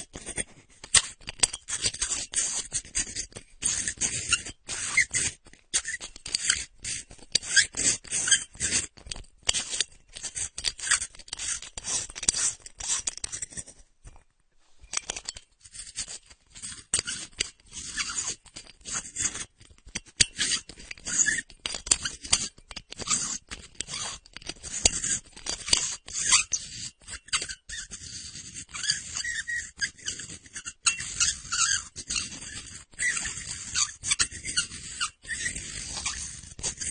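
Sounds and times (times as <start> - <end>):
light bulb screwing in socket: 18.6 - 25.9.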